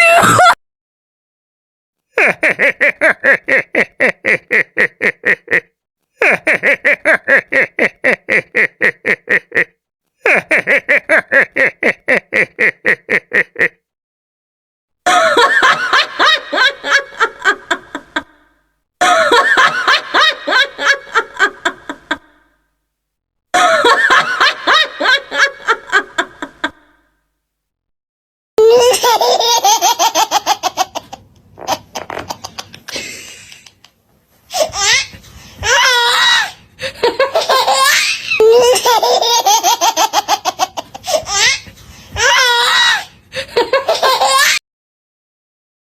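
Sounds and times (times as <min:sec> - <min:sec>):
canned laughter: 0:02.2 - 0:13.8, 0:15.1 - 0:18.4, 0:19.0 - 0:22.4, 0:23.6 - 0:26.9, 0:35.6 - 0:42.8, 0:43.4 - 0:44.6.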